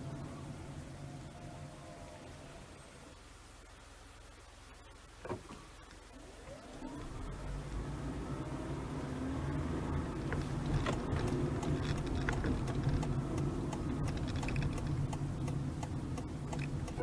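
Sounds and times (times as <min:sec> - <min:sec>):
low rumble of moving car: 0:00.0 - 0:17.0
light clicks and ticks: 0:10.3 - 0:17.0.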